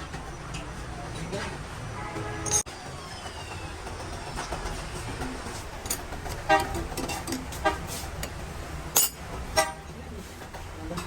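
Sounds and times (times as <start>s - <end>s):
vehicle horn toots: 1.9s - 2.6s, 6.5s - 6.8s, 7.6s - 7.9s.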